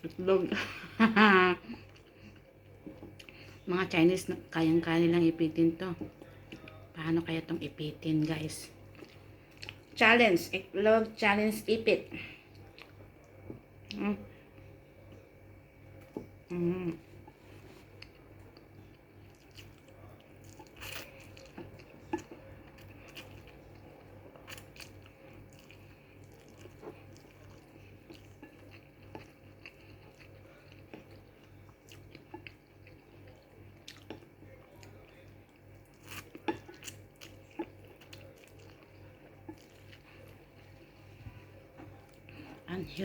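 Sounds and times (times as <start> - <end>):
faint pulsing low hum: 0.0 - 43.0
person chewing: 8.8 - 10.0, 12.5 - 14.0, 16.0 - 42.4.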